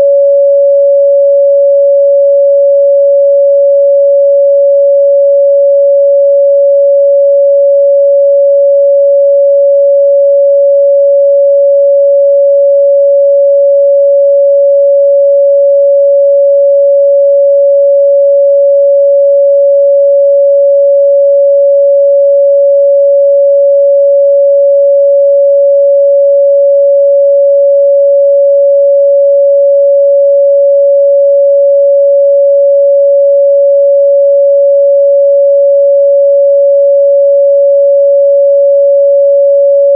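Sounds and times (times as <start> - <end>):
sine-wave test tone: 0.0 - 39.9.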